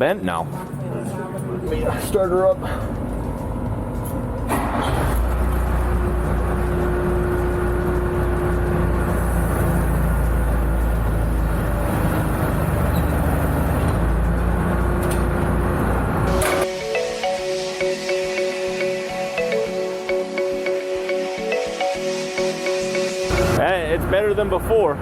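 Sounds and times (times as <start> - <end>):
tractor engine rumbling: 1.8 - 16.6
high-pitched whine: 16.3 - 24.2.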